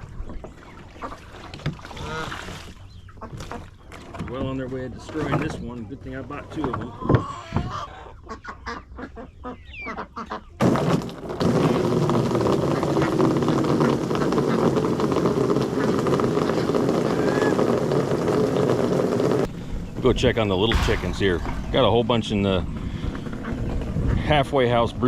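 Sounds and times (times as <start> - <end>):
ducks and geese calling: 0.6 - 3.8, 6.6 - 10.6
hose water splashing into pool: 0.7 - 3.8, 10.6 - 19.5.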